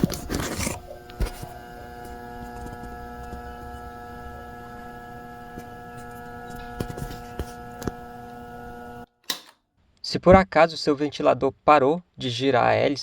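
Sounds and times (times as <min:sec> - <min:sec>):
stalled fan motor humming: 0:00.0 - 0:09.1
fan switch click: 0:09.2 - 0:09.6.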